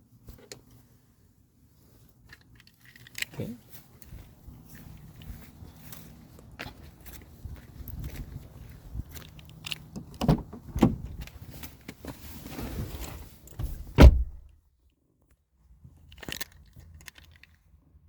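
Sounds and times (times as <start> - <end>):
loud slam: 13.9 - 14.4.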